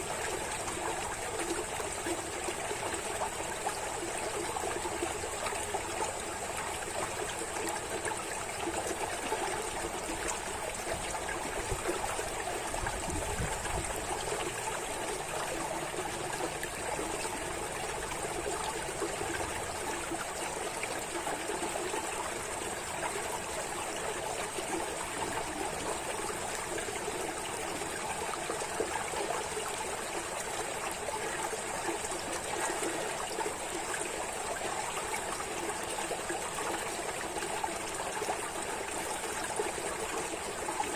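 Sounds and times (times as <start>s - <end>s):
running water: 0.0s - 40.9s.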